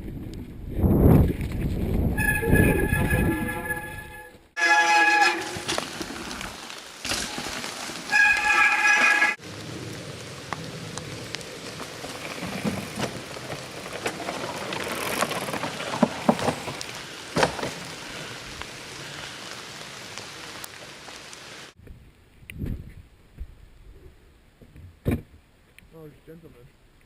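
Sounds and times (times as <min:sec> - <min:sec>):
rain and tyres hissing on trail: 0:04.5 - 0:22.4
bike knocking and rattling: 0:10.5 - 0:18.0.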